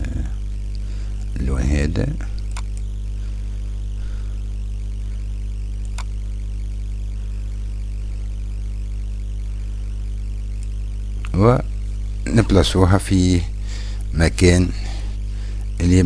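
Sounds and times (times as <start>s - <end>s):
low electrical hum: 0.0s - 16.0s
mouse click: 2.4s - 2.8s, 5.8s - 6.1s.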